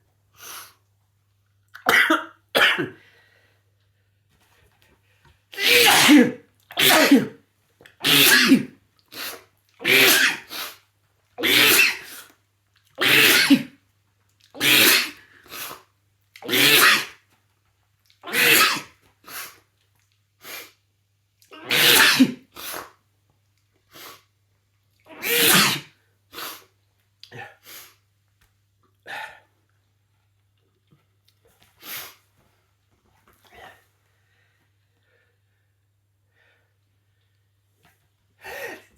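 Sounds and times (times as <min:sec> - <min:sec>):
man sneezing: 0:05.6 - 0:07.4, 0:08.0 - 0:10.6, 0:11.4 - 0:12.2, 0:13.0 - 0:13.7, 0:14.6 - 0:15.7, 0:16.4 - 0:17.2, 0:18.3 - 0:19.4, 0:21.6 - 0:22.9, 0:25.1 - 0:25.9, 0:38.4 - 0:38.9.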